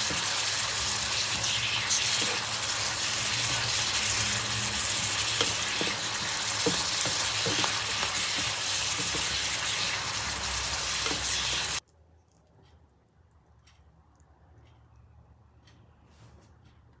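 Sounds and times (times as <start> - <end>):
greens sizzling in a hot pan: 0.0 - 11.8
utensil scraping and knocking pan: 0.0 - 11.8.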